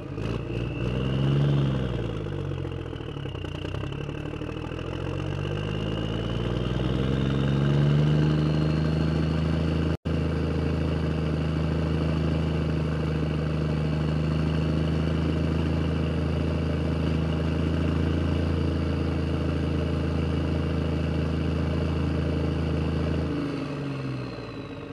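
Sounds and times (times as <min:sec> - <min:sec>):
engine running: 0:00.0 - 0:24.9.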